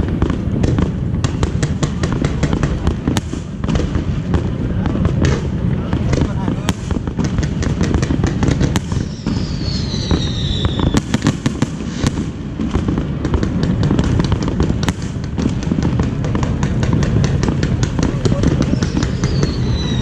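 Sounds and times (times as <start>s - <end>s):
fireworks crackling and popping: 0.0s - 20.0s
low rumble of explosions: 0.0s - 20.0s
firework whistle falling in pitch: 9.0s - 11.1s, 18.7s - 20.0s.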